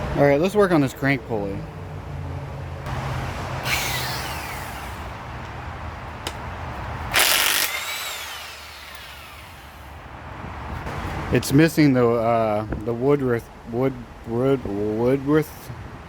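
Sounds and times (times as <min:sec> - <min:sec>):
power tool whirring: 0:03.6 - 0:05.2, 0:07.1 - 0:10.0.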